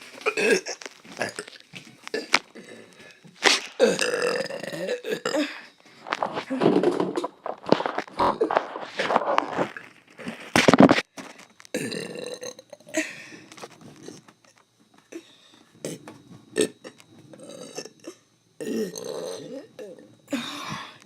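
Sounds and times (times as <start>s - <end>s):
person burping: 0.1s - 7.3s, 11.7s - 13.4s, 15.1s - 21.0s.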